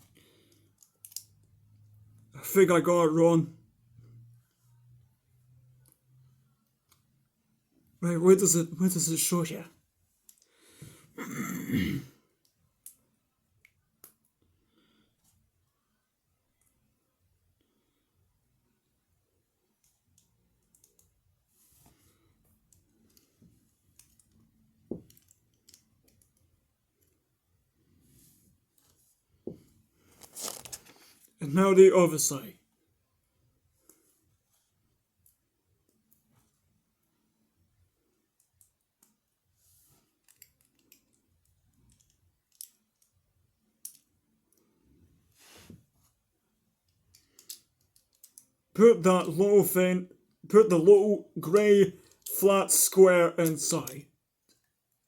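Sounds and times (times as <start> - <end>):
plastic pieces clicking: 1.0 - 1.3, 47.1 - 48.5.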